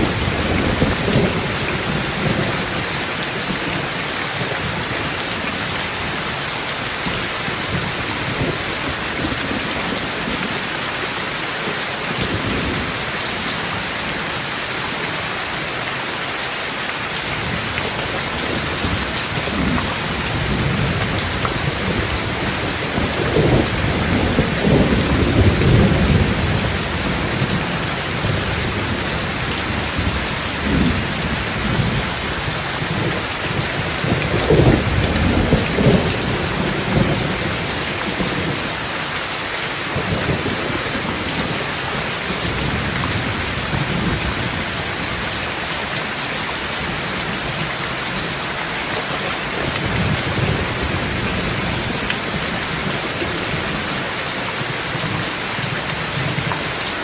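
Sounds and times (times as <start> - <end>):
thunder rumbling: 0.0 - 3.5, 17.4 - 38.7
heavy rain: 0.0 - 57.0.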